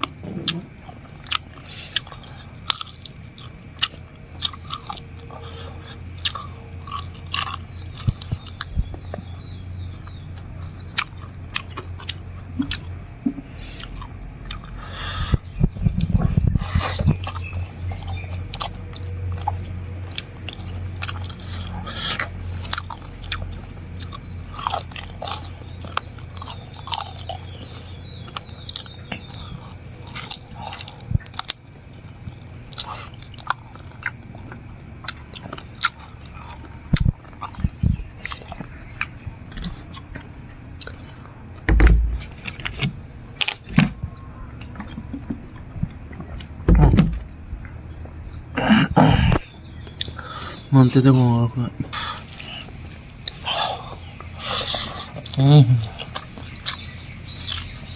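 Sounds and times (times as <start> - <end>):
person chewing crunchy food: 0.0 - 50.7, 51.6 - 57.9
low steady hum: 0.0 - 57.9
heavy low thump: 41.7 - 44.2, 46.6 - 47.7.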